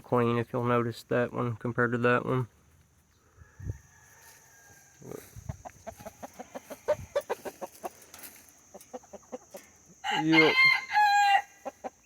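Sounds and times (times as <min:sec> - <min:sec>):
chickens clucking: 0:05.0 - 0:10.5, 0:11.6 - 0:12.0.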